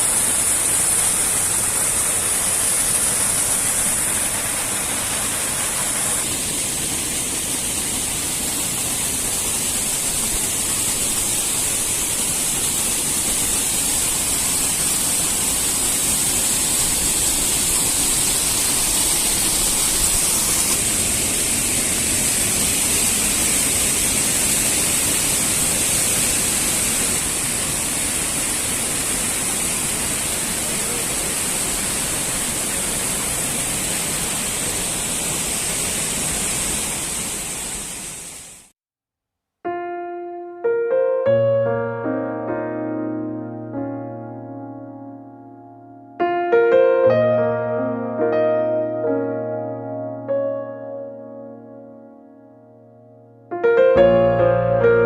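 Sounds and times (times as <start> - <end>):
waterfall roaring: 0.0 - 38.7.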